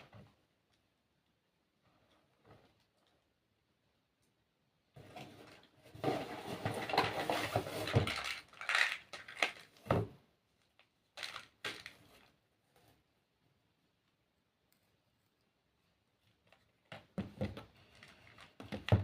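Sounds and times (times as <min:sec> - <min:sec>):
packaging rustling: 0:06.6 - 0:09.8, 0:10.8 - 0:12.3, 0:17.8 - 0:19.0.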